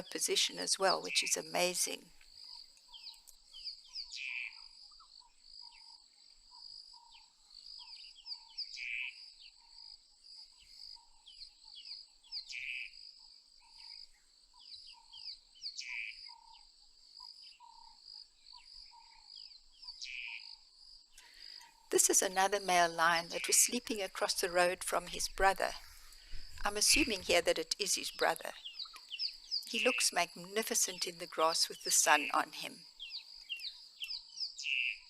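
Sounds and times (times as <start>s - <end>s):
birds chirping: 0.0s - 6.0s, 21.2s - 35.0s
insects droning: 0.1s - 35.0s.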